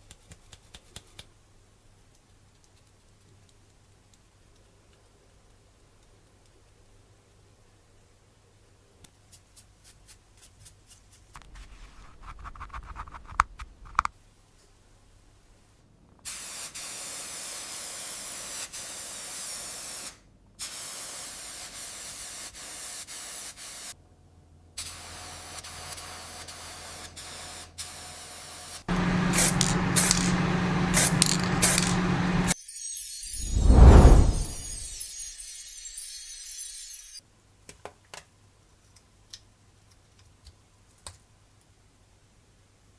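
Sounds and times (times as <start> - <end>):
paint spraying hiss: 28.9 - 32.6
rough spray with low hum: 28.9 - 32.6, 33.4 - 34.9
falling whoosh: 33.4 - 35.0.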